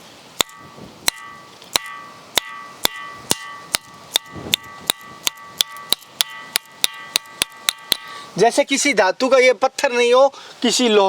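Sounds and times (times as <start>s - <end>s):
stone striking ringing rock: 0.4s - 8.3s.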